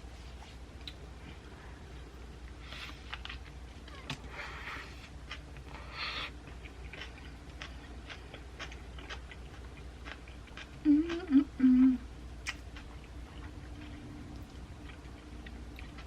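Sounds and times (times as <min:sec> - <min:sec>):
close chewing: 0:02.4 - 0:11.5, 0:12.4 - 0:16.0
person humming mmm: 0:10.8 - 0:12.1.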